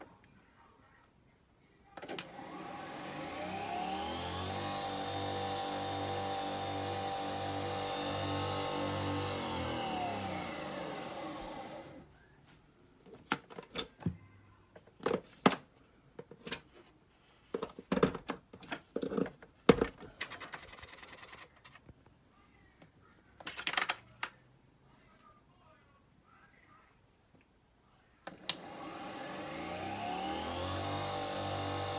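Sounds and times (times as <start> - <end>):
coffee machine motor running: 2.3 - 12.0, 28.5 - 31.9.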